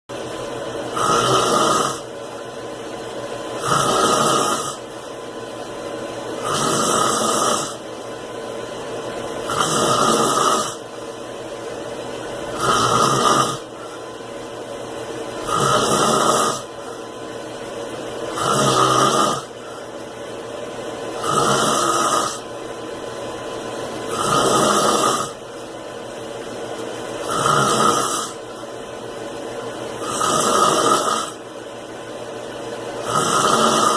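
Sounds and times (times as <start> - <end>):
man snoring: 0.9 - 2.2, 3.6 - 4.9, 6.4 - 7.9, 9.4 - 10.9, 12.4 - 14.1, 15.4 - 17.0, 18.3 - 19.9, 21.1 - 22.5, 24.1 - 25.5, 27.2 - 28.5, 30.0 - 31.4, 33.0 - 33.9.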